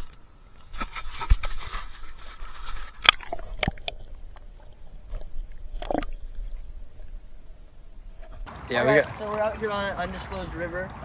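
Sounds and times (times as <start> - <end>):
sharp clicks and scrapes: 0.0 - 8.5.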